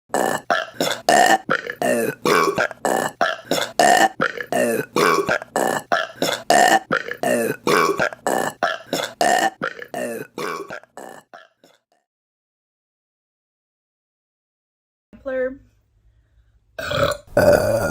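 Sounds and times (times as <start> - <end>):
rapid short burps: 0.1 - 11.8, 16.8 - 17.9.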